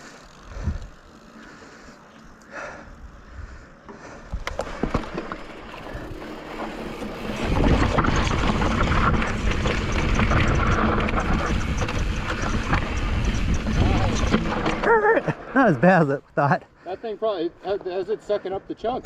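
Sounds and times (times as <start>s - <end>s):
bike rattling over rocks: 4.2s - 15.6s.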